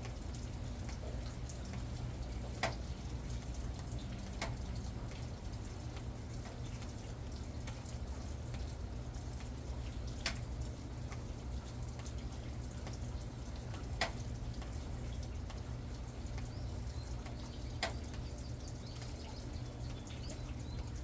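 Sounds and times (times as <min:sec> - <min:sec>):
water drops pattering: 0:00.0 - 0:21.0.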